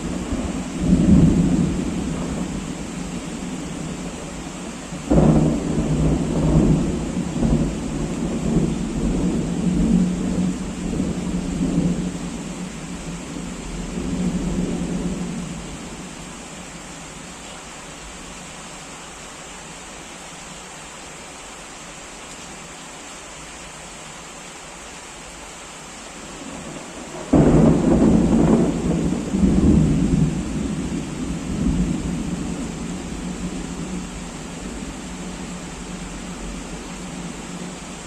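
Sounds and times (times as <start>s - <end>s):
heavy rain: 0.0s - 38.0s
thunderclap rumbling: 26.5s - 34.9s.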